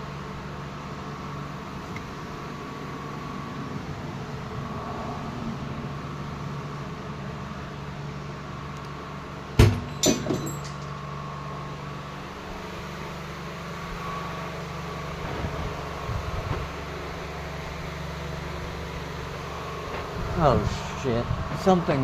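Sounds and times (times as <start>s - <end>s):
loud metallic clank: 9.6s - 10.9s.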